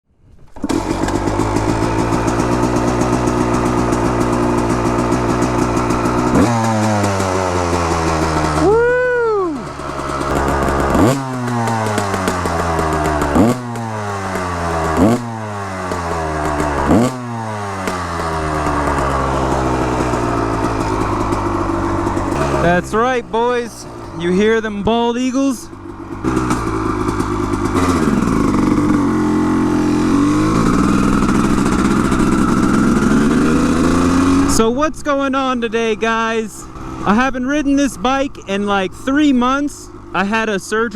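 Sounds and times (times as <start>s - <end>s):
two-stroke engine revving: 0.5s - 40.9s.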